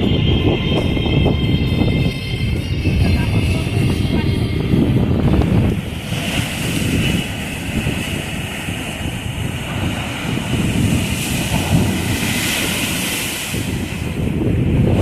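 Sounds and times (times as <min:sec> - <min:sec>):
wind buffeting microphone: 0:00.0 - 0:15.0
sea surf hissing: 0:04.6 - 0:15.0.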